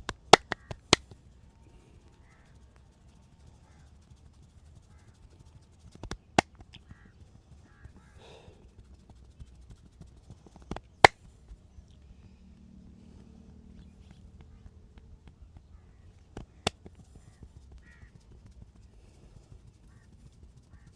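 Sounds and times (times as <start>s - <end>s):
massage strikes cracking: 0.0s - 1.0s.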